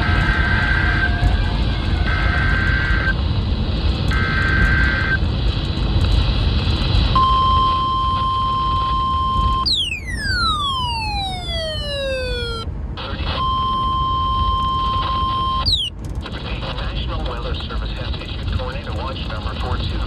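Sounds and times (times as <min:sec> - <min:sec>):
falling pitch sweep: 0:09.7 - 0:12.6, 0:15.7 - 0:15.9
screechy data burst warble: 0:09.7 - 0:12.6, 0:15.7 - 0:15.9
steady alert tone: 0:09.7 - 0:12.6, 0:15.7 - 0:15.9
radio hiss and rumble: 0:16.4 - 0:20.0.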